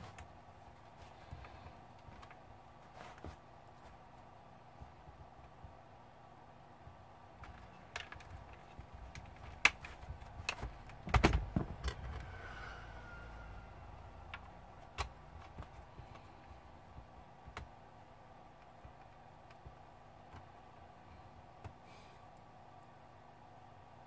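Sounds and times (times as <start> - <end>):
laptop parts clicking and tapping: 7.4 - 12.2, 14.3 - 17.9, 18.5 - 20.6.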